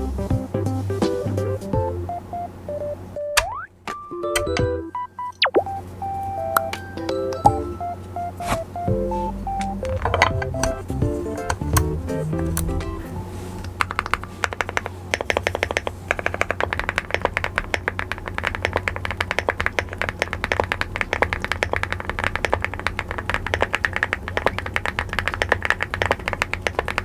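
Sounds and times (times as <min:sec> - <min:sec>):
mechanical keyboard typing: 0:13.8 - 0:27.0.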